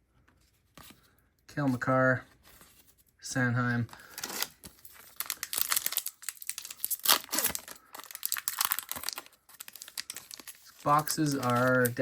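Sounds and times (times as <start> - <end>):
card pack wrapper crinkling: 3.9 - 12.0.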